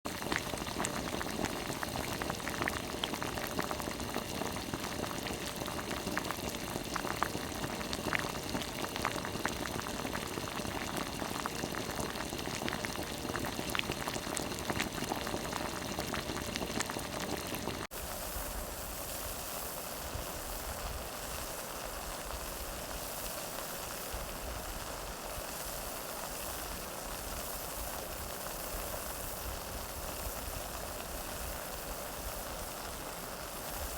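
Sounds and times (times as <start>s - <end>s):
water boiling in a pot: 0.1s - 33.9s
steady hiss with low rumble: 17.9s - 33.9s.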